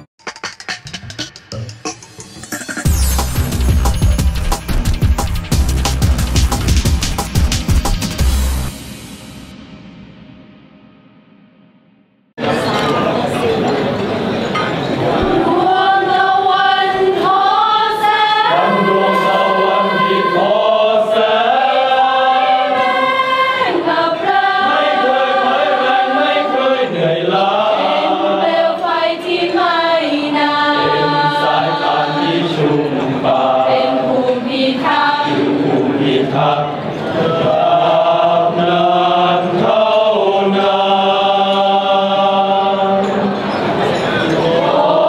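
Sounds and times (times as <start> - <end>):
choir singing in harmony: 14.5 - 45.0.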